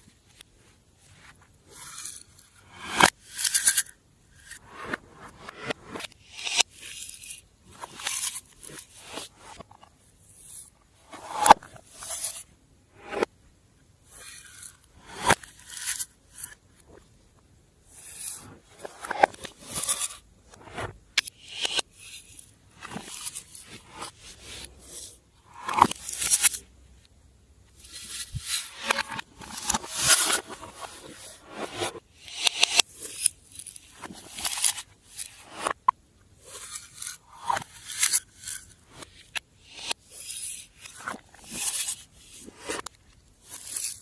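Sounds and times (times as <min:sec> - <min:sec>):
scraping and crunching slime: 0:39.7 - 0:44.0.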